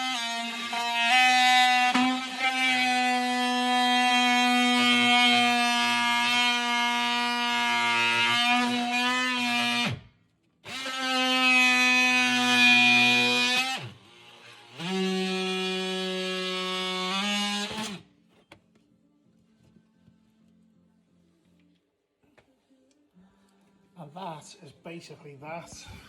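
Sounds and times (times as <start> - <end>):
oscillating tool cutting wood: 0.0 - 10.0, 10.7 - 18.0.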